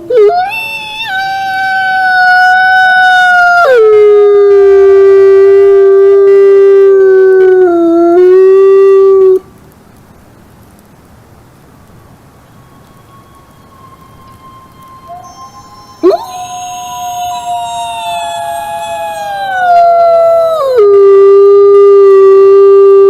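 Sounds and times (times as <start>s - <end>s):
wolf howling: 0.0s - 6.1s, 12.7s - 22.8s
faint background hiss: 0.0s - 23.0s.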